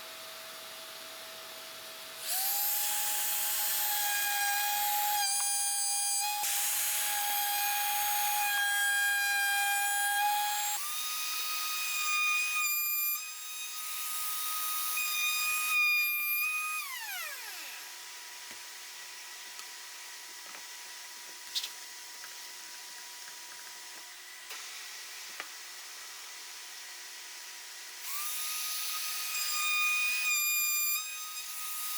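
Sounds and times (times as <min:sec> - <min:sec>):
router rasping through wood: 0:02.2 - 0:18.0, 0:28.0 - 0:31.9
trim router whining: 0:02.2 - 0:19.0, 0:28.0 - 0:31.9.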